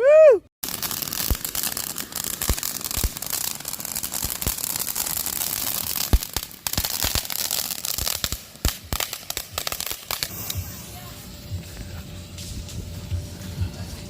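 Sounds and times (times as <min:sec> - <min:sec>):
fireworks pops: 0:00.6 - 0:10.8
fireworks crackling: 0:00.6 - 0:14.0.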